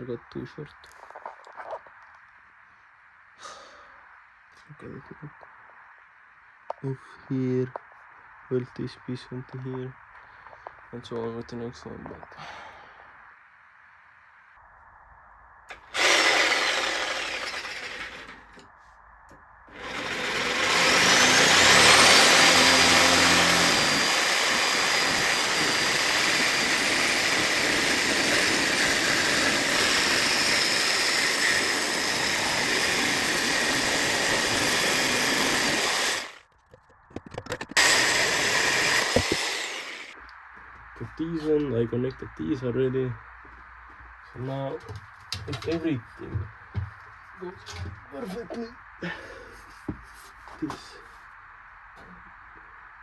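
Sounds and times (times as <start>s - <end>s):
angle grinder on metal: 15.7s - 18.6s, 19.7s - 36.4s, 37.8s - 40.2s.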